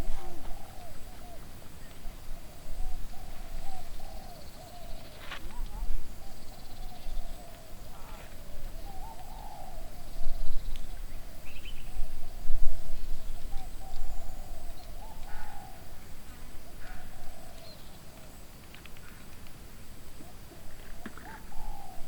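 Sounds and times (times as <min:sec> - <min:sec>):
bird calls: 0:20.2 - 0:22.0.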